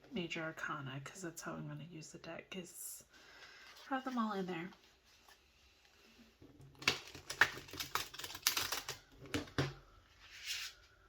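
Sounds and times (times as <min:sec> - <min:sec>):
cards being shuffled: 0:06.8 - 0:09.0.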